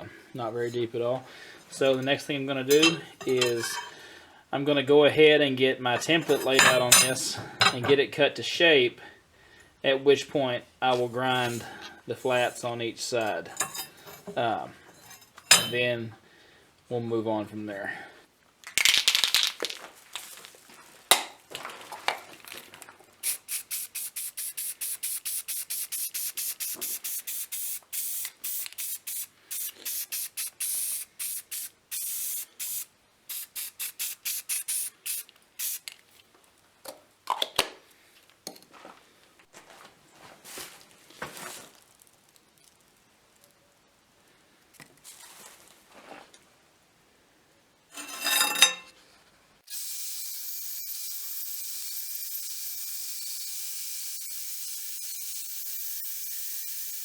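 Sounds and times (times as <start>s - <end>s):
aerosol spray bursts: 23.2s - 35.9s.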